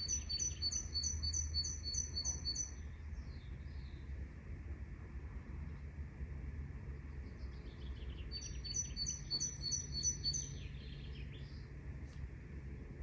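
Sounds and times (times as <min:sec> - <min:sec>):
songbird singing: 0:00.0 - 0:04.3, 0:06.8 - 0:11.9
low forest ambience rumble: 0:00.0 - 0:13.0.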